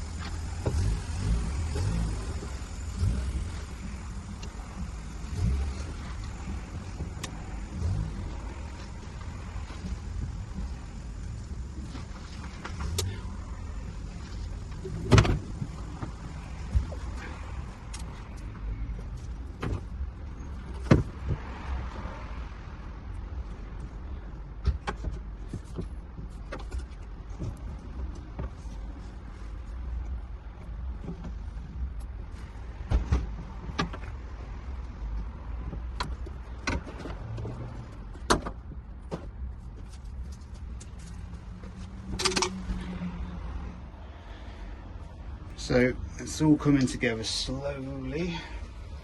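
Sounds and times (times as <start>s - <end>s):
tools clicking and knocking: 42.0s - 42.7s.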